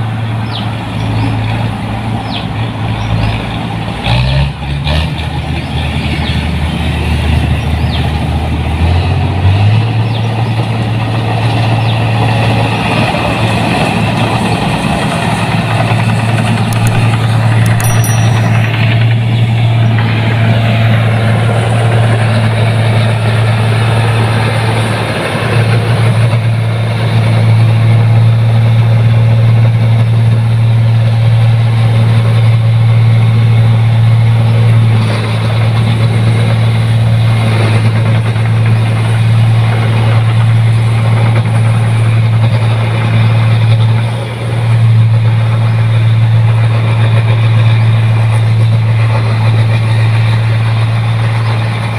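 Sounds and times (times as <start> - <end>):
combine harvester engine running: 0.0 - 51.9.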